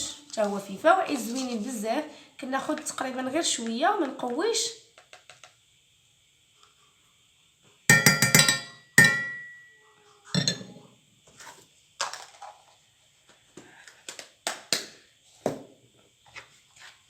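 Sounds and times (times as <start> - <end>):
spoon clinking against glass: 7.9 - 9.6.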